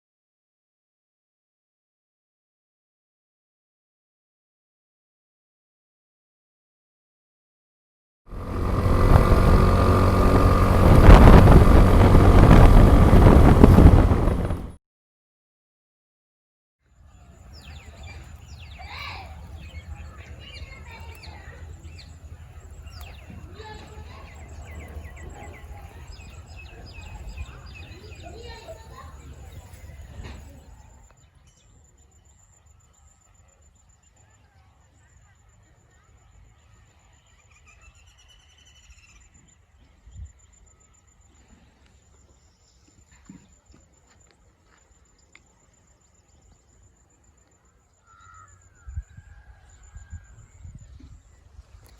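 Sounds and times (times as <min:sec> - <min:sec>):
low steady rumble: 0:08.3 - 0:14.8
small birds chirping: 0:17.1 - 0:51.9
insect trill: 0:44.2 - 0:50.4.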